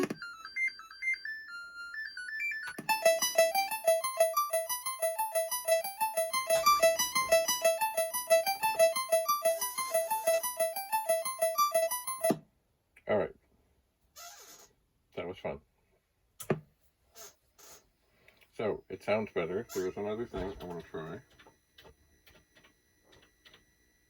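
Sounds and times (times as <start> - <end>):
chiptune melody: 0.0 - 12.4.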